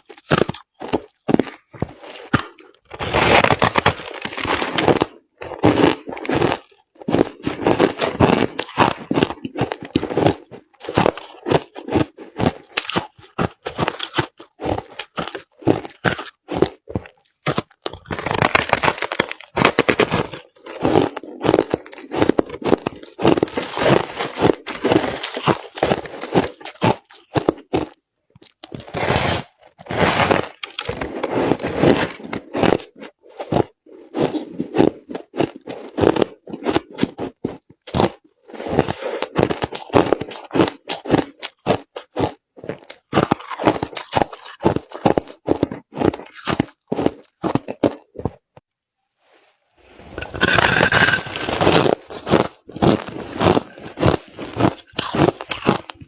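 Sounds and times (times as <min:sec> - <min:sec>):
crushed ice being chewed: 0:00.0 - 0:48.7, 0:49.8 - 0:56.0.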